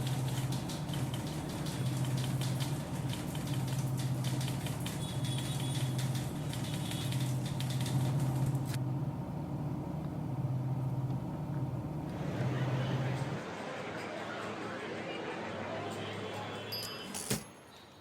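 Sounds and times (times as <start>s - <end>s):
typewriter keys clicking: 0.0s - 8.2s.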